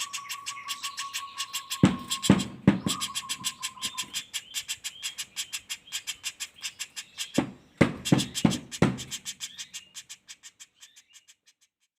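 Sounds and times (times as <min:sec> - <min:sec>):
woodpecker rattling call: 0:00.0 - 0:11.9
loud knocks: 0:01.8 - 0:03.5, 0:07.4 - 0:09.2.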